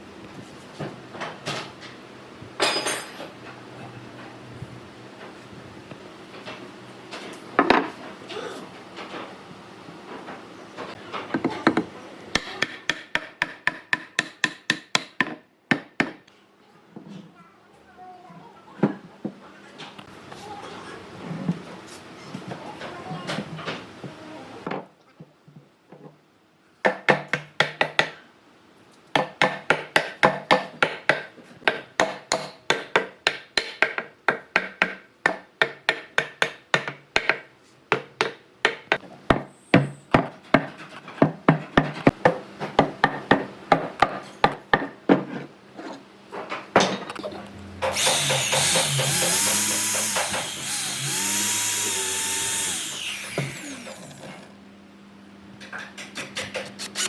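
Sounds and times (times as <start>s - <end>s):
power tool whining: 47.8s - 54.5s, 56.6s - 57.0s.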